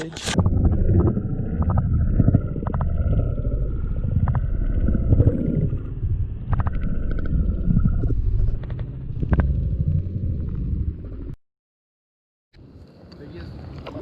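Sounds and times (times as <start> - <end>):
muffled underwater water gurgling: 0.4 - 11.4.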